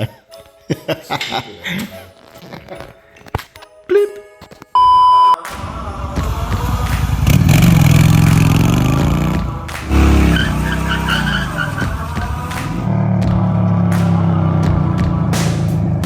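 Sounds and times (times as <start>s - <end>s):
vehicle engine revving: 5.6s - 16.0s.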